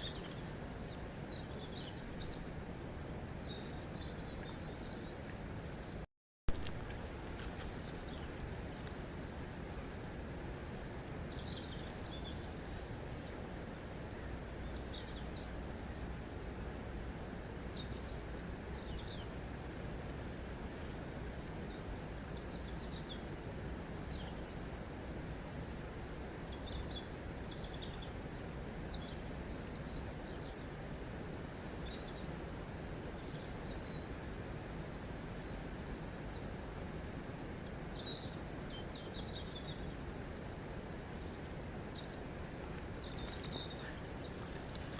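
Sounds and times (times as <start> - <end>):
small birds chirping: 0.0 - 6.0, 37.4 - 44.9
flowing water: 6.5 - 44.9.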